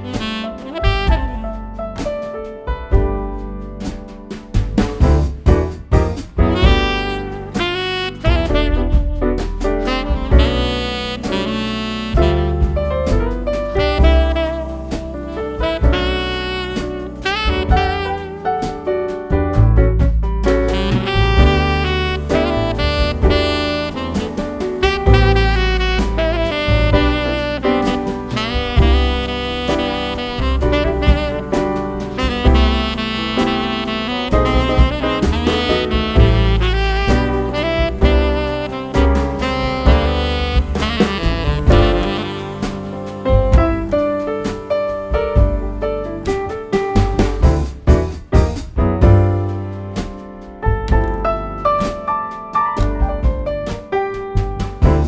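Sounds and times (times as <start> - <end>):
saxophone: 0.0 - 2.2, 6.4 - 19.1, 20.4 - 47.1
bass: 0.0 - 55.0
drums: 0.0 - 55.0
jazz music: 0.0 - 55.0
piano: 0.0 - 55.0.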